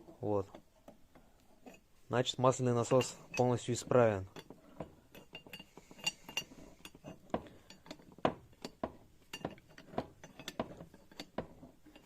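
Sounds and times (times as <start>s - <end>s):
metal parts clinking and knocking: 0.1s - 12.0s.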